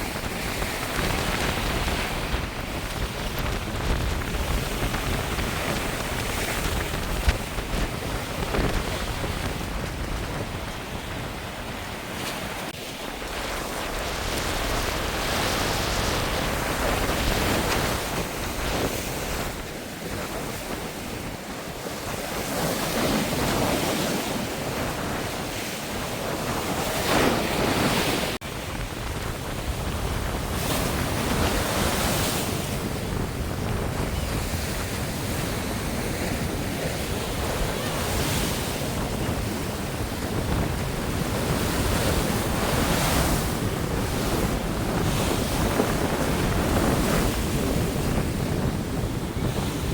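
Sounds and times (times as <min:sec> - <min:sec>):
sea waves washing onto beach: 0:00.0 - 0:49.9
wind buffeting microphone: 0:00.0 - 0:49.9.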